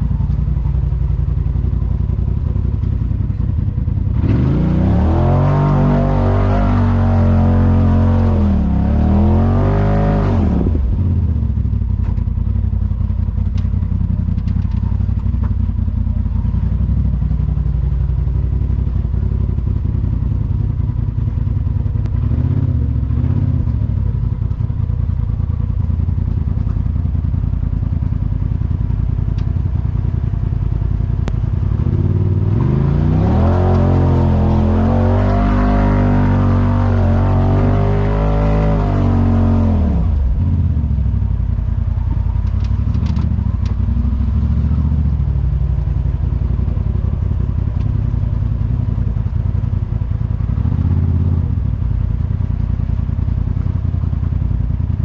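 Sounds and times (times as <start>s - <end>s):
engine revving: 4.1s - 11.6s, 22.1s - 23.9s, 31.2s - 41.1s, 50.5s - 51.6s.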